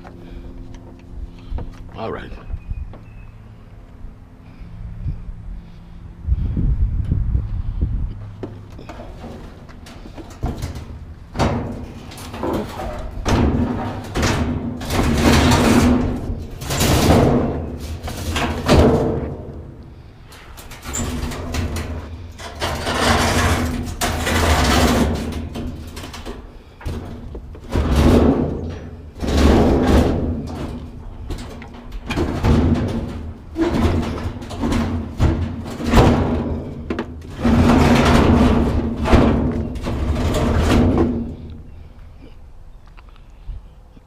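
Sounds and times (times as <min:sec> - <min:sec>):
metal knocks and bangs: 0:08.4 - 0:41.8.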